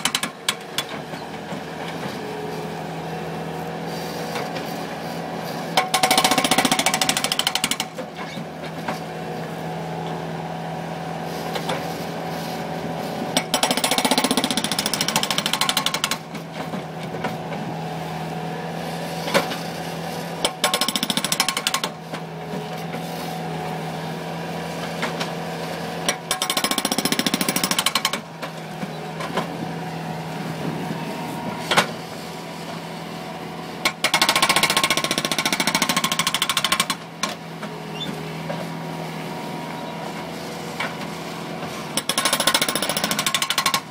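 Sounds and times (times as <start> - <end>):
hydraulic breaker hammering pavement: 0.0 - 2.1, 5.7 - 8.2, 13.2 - 16.9, 20.4 - 22.2, 26.0 - 28.6, 33.8 - 37.4, 41.7 - 43.9
loader engine running: 0.0 - 43.9.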